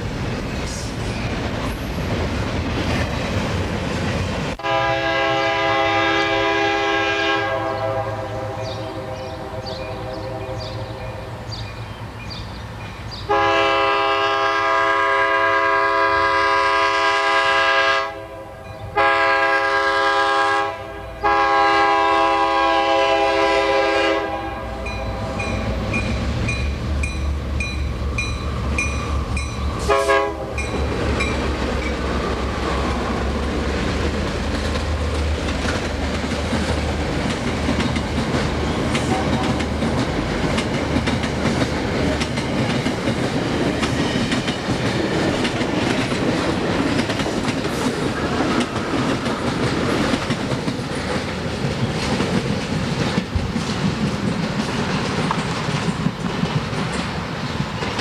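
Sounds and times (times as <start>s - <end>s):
train rumbling past: 0.0s - 58.0s
train air horn blasts: 4.6s - 11.4s, 13.3s - 26.0s, 29.2s - 30.8s, 38.7s - 39.8s.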